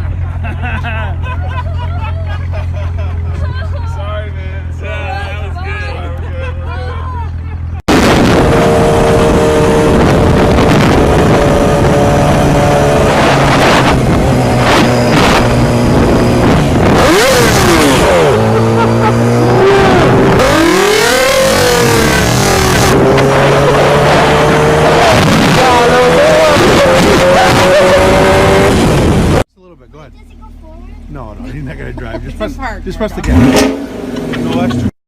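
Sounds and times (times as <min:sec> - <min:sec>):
car engine revving: 0:07.9 - 0:29.5, 0:30.2 - 0:34.9.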